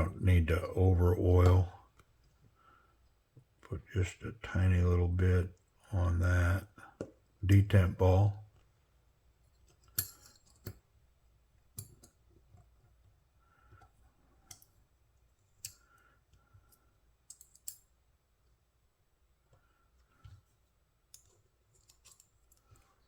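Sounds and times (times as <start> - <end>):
small metal parts clicking: 9.7 - 10.7, 16.7 - 17.9, 21.1 - 22.8.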